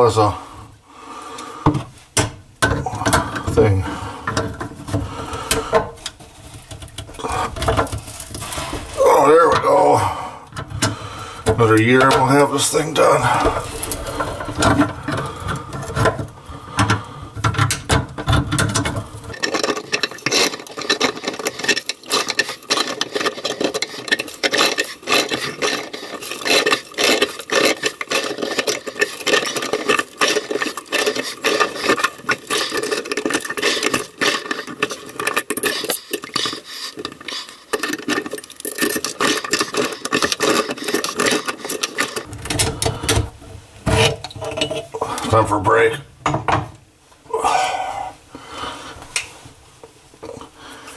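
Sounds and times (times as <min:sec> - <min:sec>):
hand tools scraping metal nut: 0:10.5 - 0:43.3.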